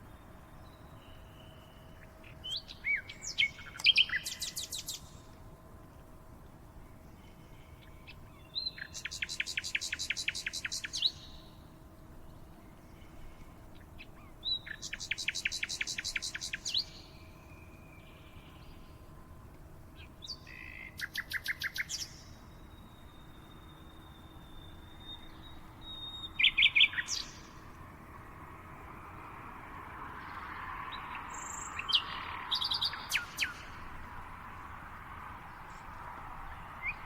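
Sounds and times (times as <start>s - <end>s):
songbird trilling: 1.0s - 5.1s, 7.8s - 11.5s, 14.0s - 17.2s, 20.2s - 27.6s, 30.3s - 33.9s, 36.8s - 37.0s.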